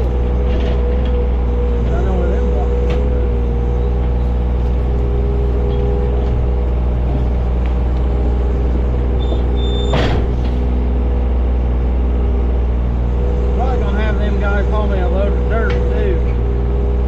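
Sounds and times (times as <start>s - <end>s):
diesel engine running: 0.0s - 17.0s
hydraulic whine: 0.0s - 17.0s
sharp clunk: 9.3s - 10.7s.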